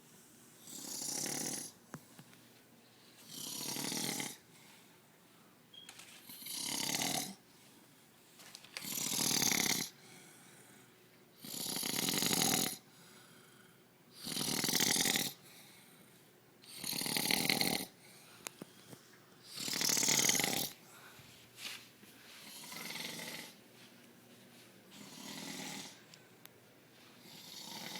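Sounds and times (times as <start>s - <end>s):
man snoring: 0.6s - 1.8s, 3.3s - 4.4s, 6.4s - 7.4s, 8.9s - 10.0s, 11.4s - 12.8s, 14.2s - 15.4s, 16.7s - 18.0s, 19.6s - 20.8s, 22.6s - 23.6s, 25.0s - 26.0s, 27.2s - 27.9s.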